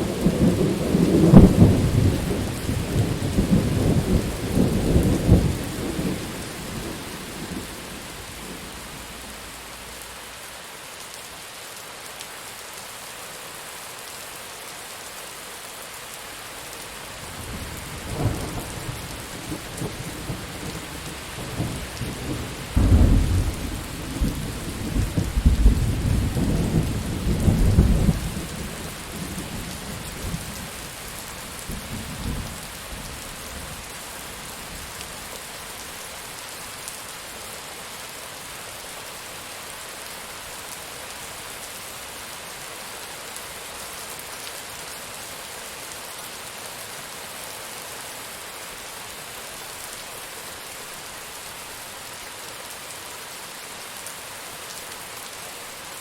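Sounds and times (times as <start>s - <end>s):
thunder rumbling: 0.0s - 10.0s, 17.4s - 28.5s
steady rain falling: 0.0s - 56.0s.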